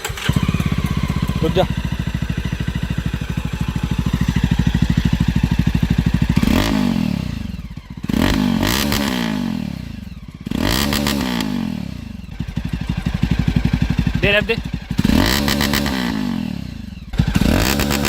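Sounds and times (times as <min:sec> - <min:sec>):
motorcycle engine idling: 0:00.0 - 0:18.0
motorcycle throttle blips: 0:00.0 - 0:18.0.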